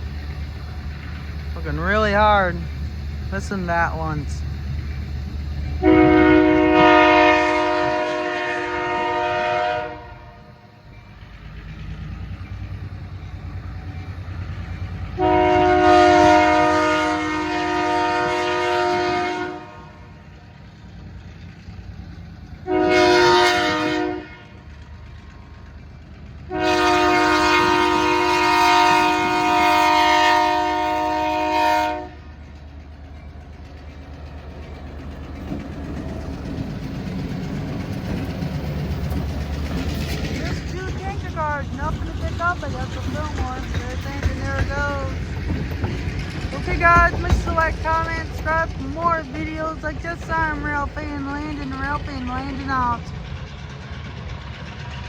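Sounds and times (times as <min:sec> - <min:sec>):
train rumbling on rails: 0:00.0 - 0:55.0
locomotive air horn blasts: 0:05.8 - 0:10.6, 0:15.2 - 0:20.2, 0:22.6 - 0:24.6, 0:26.5 - 0:32.4.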